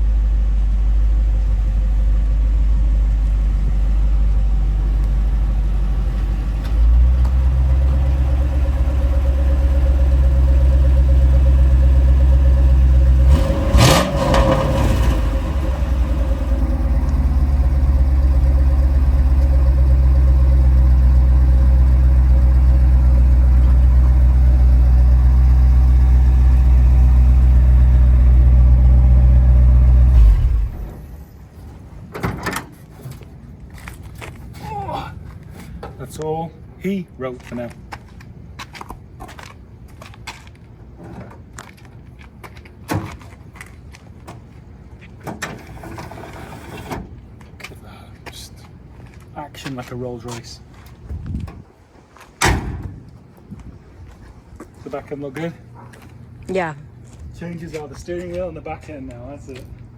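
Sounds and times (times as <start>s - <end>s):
pickup truck engine running: 0.0s - 32.1s.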